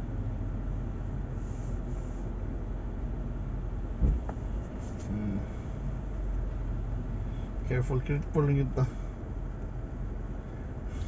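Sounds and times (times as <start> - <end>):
low rumble of car in traffic: 0.0 - 11.0
sharp thump: 4.0 - 4.4.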